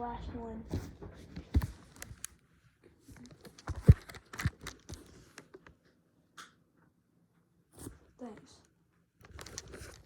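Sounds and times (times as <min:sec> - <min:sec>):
mobile phone being pried open: 0:03.4 - 0:05.0.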